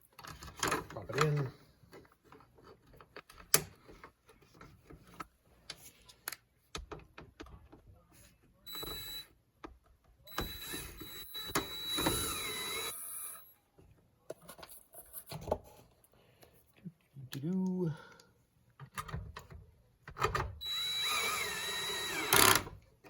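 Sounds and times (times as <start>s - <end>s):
cordless drill whining: 8.7s - 9.2s, 10.3s - 13.5s, 20.6s - 22.7s.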